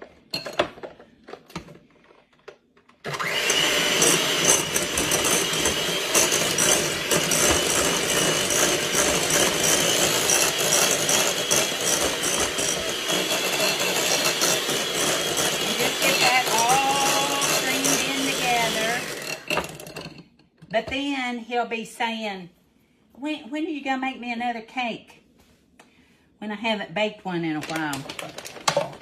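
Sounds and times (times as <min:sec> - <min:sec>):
electric mixer motor whine: 0:03.1 - 0:19.9.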